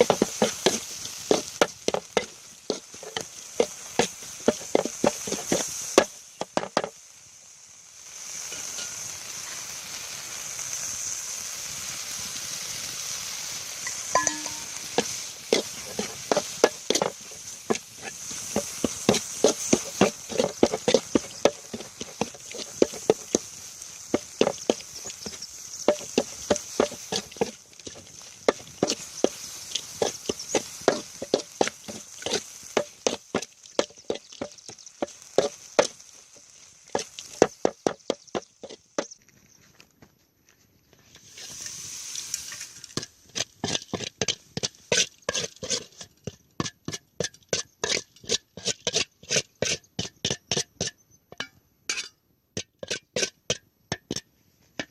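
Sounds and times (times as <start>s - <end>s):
steady hiss: 0.0s - 40.0s, 40.9s - 46.1s
knocking strokes: 24.1s - 36.0s.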